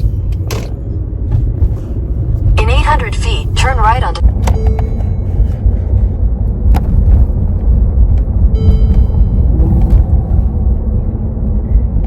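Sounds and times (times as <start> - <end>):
car driving rumble inside cabin: 0.0 - 12.0.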